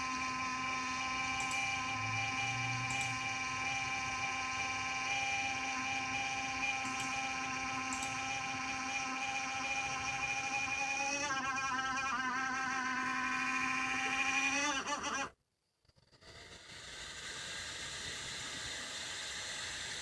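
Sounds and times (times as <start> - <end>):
cooling fan whining: 0.0 - 15.2.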